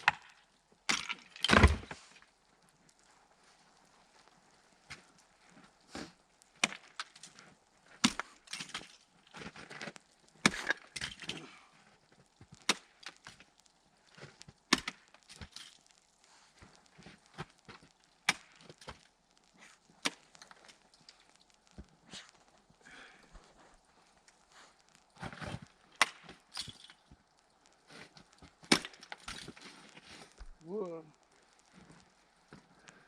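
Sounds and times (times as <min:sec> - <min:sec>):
hammer cracking ice: 0:00.0 - 0:01.9, 0:06.6 - 0:07.4, 0:08.0 - 0:09.6, 0:10.4 - 0:11.4, 0:12.6 - 0:13.4, 0:14.7 - 0:15.8, 0:18.3 - 0:19.0, 0:25.2 - 0:27.0, 0:28.6 - 0:29.7
ice crunching and shattering: 0:00.0 - 0:02.3, 0:06.5 - 0:16.0, 0:16.6 - 0:21.5, 0:24.1 - 0:30.4.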